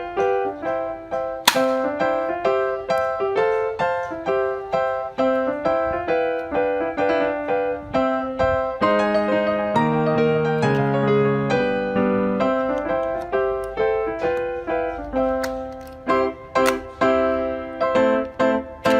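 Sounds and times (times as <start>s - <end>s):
piano music: 0.0s - 18.9s
sharp click: 1.5s - 2.0s.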